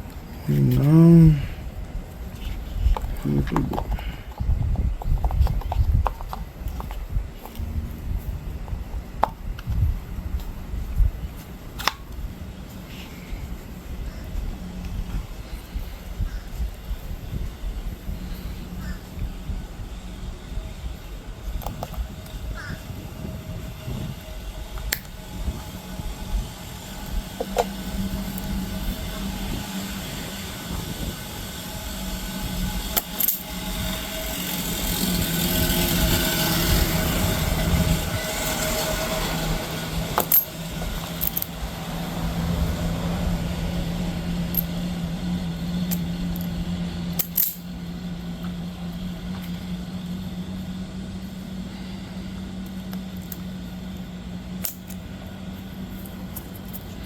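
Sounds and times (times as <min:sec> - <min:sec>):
steady low hum: 0:00.0 - 0:57.0
small tools clicking and clinking: 0:32.9 - 0:33.5, 0:40.1 - 0:41.6, 0:44.5 - 0:44.8, 0:45.9 - 0:47.7, 0:54.6 - 0:55.0.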